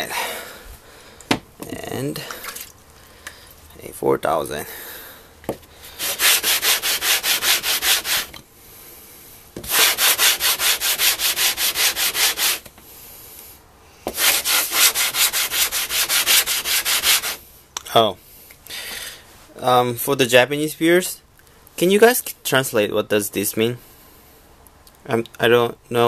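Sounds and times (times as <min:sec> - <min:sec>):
stone scraping on wet sandpaper: 0:05.9 - 0:08.4, 0:09.6 - 0:12.6, 0:14.1 - 0:17.4.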